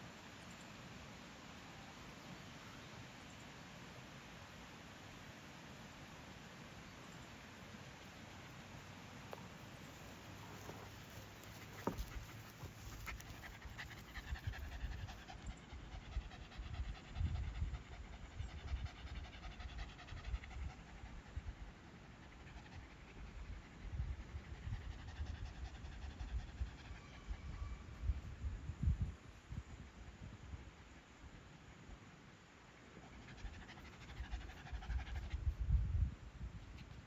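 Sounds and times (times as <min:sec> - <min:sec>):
rapid panting breaths: 0:10.0 - 0:27.0.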